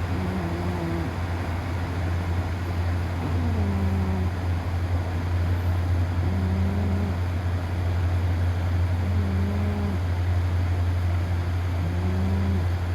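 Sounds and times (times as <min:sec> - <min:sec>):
cat snoring: 0:00.0 - 0:01.2, 0:03.2 - 0:04.4, 0:06.2 - 0:07.2, 0:09.0 - 0:10.0, 0:11.8 - 0:12.7
steady low hum: 0:00.0 - 0:12.9.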